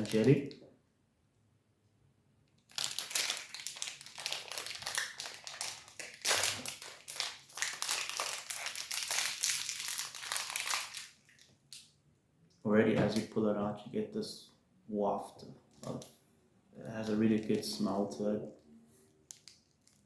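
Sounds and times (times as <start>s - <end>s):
plastic wrapper crinkling: 0.0s - 0.5s, 2.6s - 11.9s, 16.9s - 17.8s, 19.2s - 20.0s.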